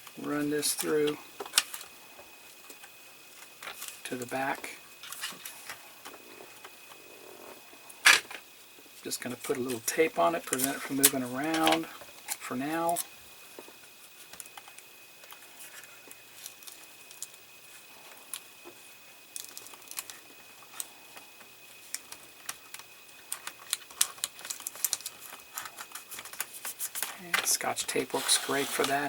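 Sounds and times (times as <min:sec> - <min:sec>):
tape crinkling: 0:19.4 - 0:20.9, 0:21.8 - 0:29.0.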